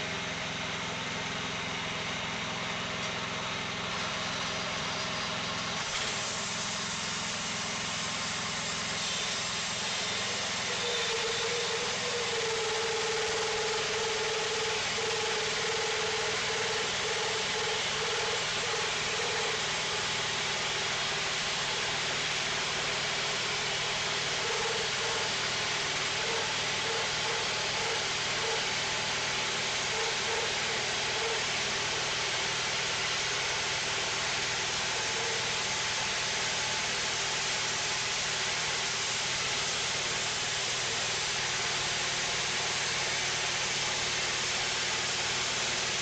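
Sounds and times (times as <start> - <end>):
band sawmill running: 0.0 - 46.0
pulsing mid-pitched tone: 10.3 - 20.2, 24.1 - 32.4.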